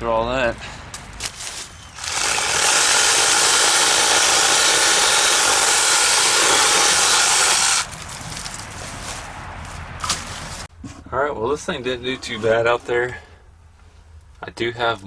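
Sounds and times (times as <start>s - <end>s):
electric chainsaw cutting wood: 1.9s - 8.0s.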